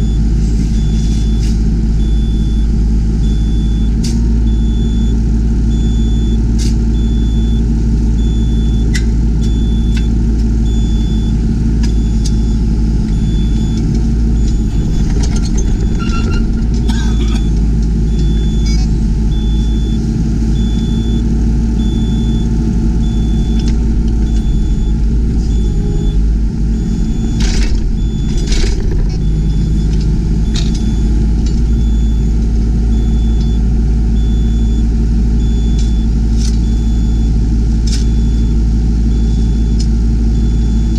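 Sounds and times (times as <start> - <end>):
high pulsing beep: 0.0 - 6.4, 7.0 - 7.6, 8.2 - 20.0, 20.6 - 33.6, 34.2 - 40.9
excavator diesel engine running: 0.0 - 40.9
machine knocks and clunks: 13.1 - 18.9, 23.3 - 32.1.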